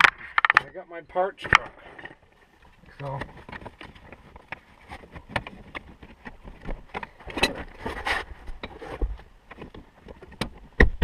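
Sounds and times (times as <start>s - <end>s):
rustling scrape of trim: 7.4s - 9.2s.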